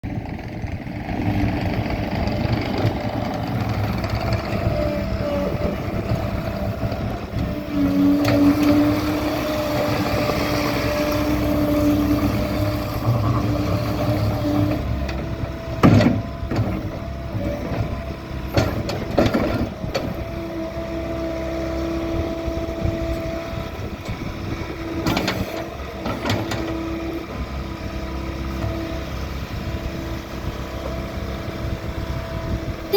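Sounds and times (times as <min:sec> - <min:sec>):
diesel engine running with whine: 0:00.0 - 0:32.9.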